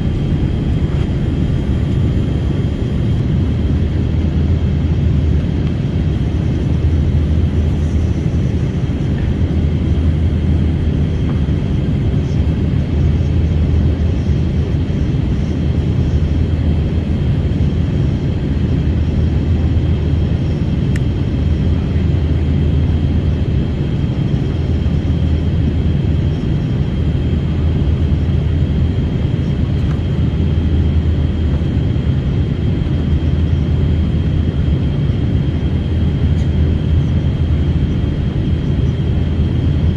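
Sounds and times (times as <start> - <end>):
airplane engine rumble: 0.0 - 39.9.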